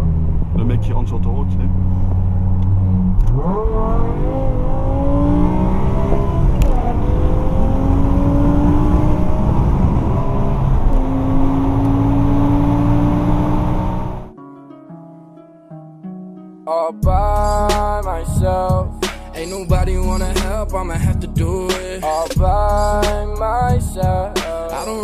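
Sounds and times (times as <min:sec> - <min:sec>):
car engine accelerating: 0:00.0 - 0:14.3.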